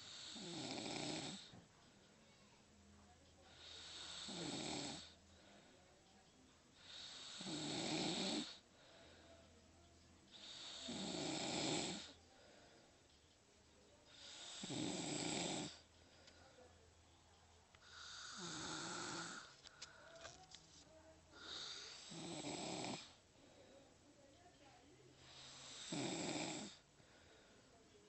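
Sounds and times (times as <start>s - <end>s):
person snoring: 0.0s - 1.5s, 3.6s - 5.1s, 6.8s - 8.6s, 10.4s - 12.2s, 14.1s - 15.8s, 17.8s - 19.5s, 21.4s - 23.2s, 25.3s - 26.8s.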